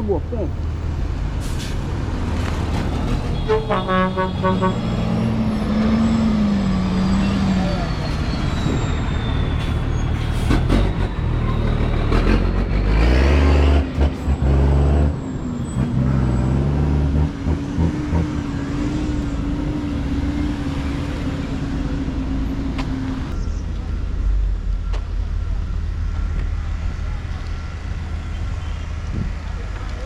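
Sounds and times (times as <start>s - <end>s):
engine revving and pulling away: 4.5s - 23.4s.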